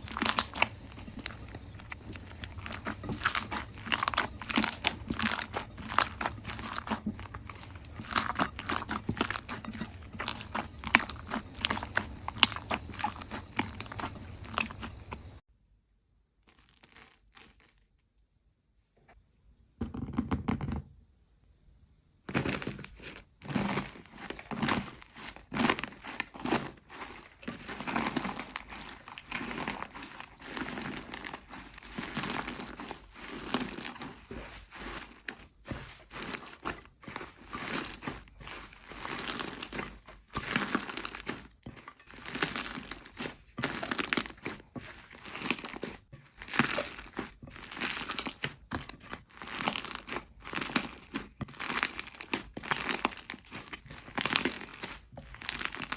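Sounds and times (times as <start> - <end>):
slime squished by hand crackling: 0.0 - 15.4, 42.1 - 55.9.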